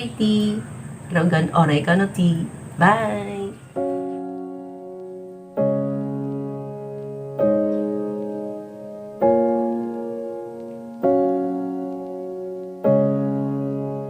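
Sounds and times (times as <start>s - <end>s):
slow piano chords: 0.0s - 14.0s.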